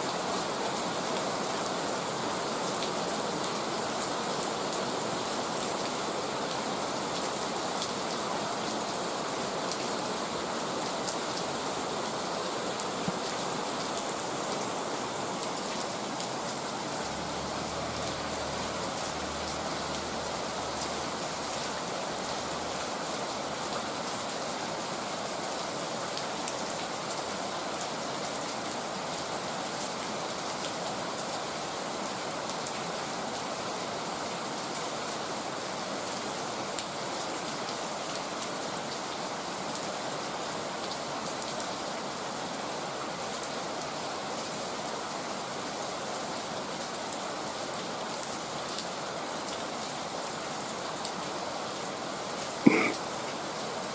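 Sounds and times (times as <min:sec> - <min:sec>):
heavy rain: 0:00.0 - 0:53.9
raindrops ticking on surfaces: 0:00.4 - 0:31.1.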